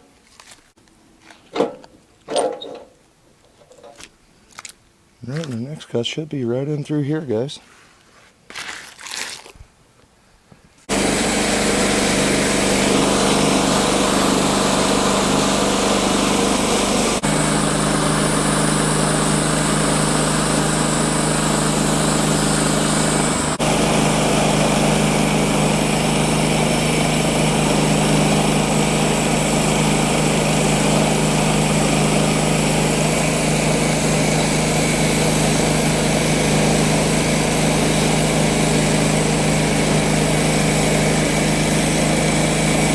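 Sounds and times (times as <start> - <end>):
band sawmill engine running: 5.2 - 7.6, 10.9 - 42.9
saw cutting log: 10.9 - 42.9.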